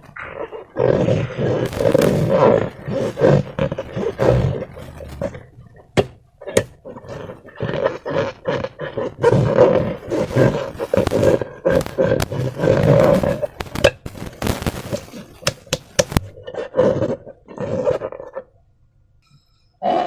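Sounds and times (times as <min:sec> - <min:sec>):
rubber balloon squeaking and squelching: 0:00.0 - 0:18.5
sharp clicks and snaps: 0:01.6 - 0:05.4, 0:10.0 - 0:16.4.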